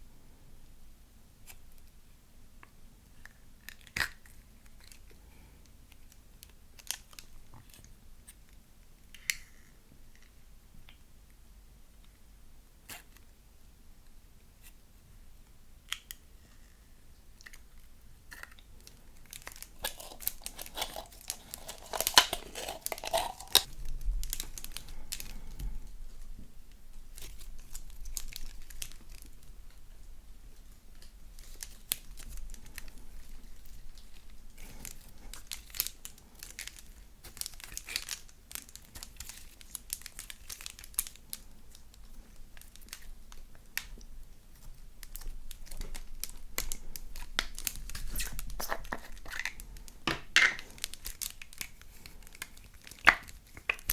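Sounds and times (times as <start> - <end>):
slime crackling and popping: 17.4 - 26.2, 27.1 - 29.9, 30.9 - 53.9.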